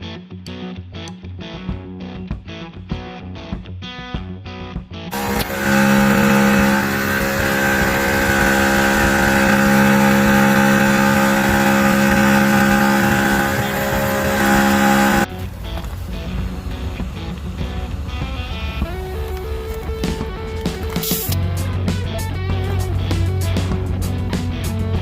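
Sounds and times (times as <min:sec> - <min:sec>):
air compressor buzzing: 0:05.1 - 0:21.4.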